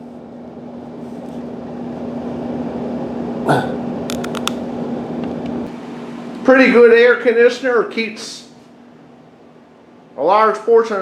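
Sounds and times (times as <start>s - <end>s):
air conditioner fan rushing: 0.0s - 11.0s
quick clicks: 4.1s - 4.6s.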